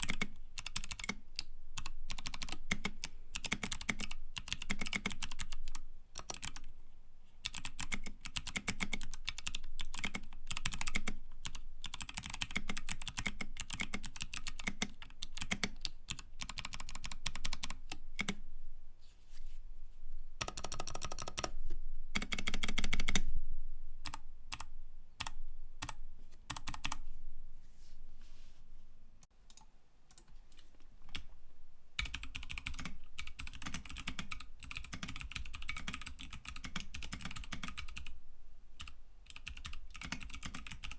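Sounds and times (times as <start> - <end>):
mechanical keyboard typing: 0.0 - 6.7, 7.4 - 18.4, 20.4 - 21.6, 22.2 - 23.2, 24.0 - 27.0, 32.0 - 38.1, 38.8 - 40.9.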